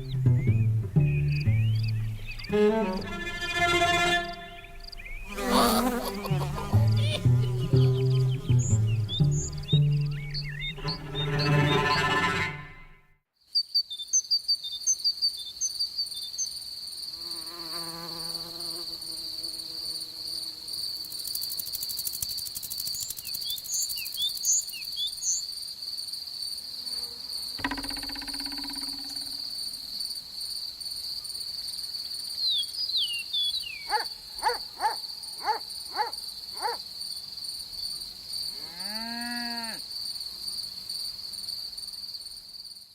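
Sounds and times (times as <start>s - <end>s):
crickets trilling: 1.3s - 11.2s, 13.8s - 42.9s
animal calls: 2.3s - 8.8s, 33.8s - 36.8s.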